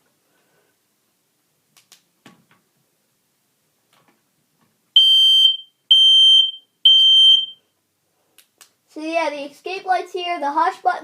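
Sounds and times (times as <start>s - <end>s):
smoke alarm beeping: 5.0s - 7.7s.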